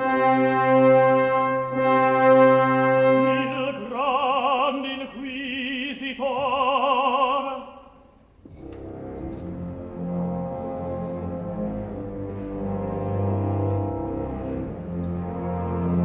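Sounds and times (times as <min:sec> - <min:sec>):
held brass chord: 0:00.0 - 0:03.9
long notes with strong vibrato: 0:00.0 - 0:04.8
orchestra playing opera music: 0:00.0 - 0:16.0.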